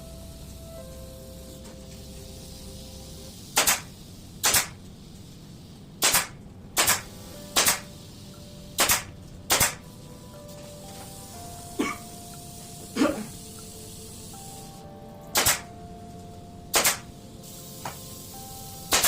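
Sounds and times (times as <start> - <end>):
sharp double snapping cracks: 3.6 - 4.8, 6.0 - 7.9, 8.8 - 9.8, 15.3 - 15.7, 16.7 - 17.1.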